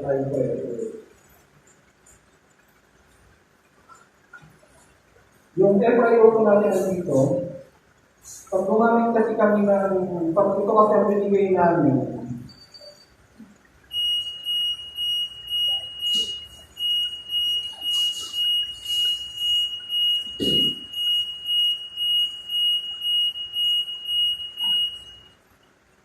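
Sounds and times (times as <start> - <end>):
ventilator alarm beeping: 5.6 - 25.8.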